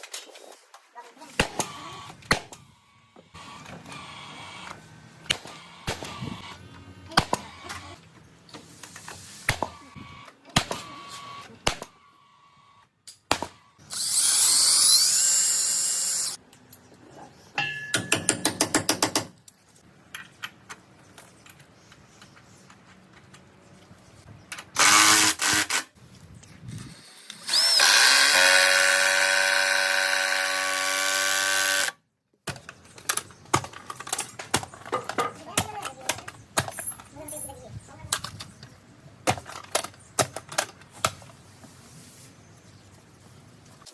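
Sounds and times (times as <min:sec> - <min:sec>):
power drill whirring: 0:13.8 - 0:16.4, 0:24.8 - 0:25.9, 0:26.9 - 0:32.0.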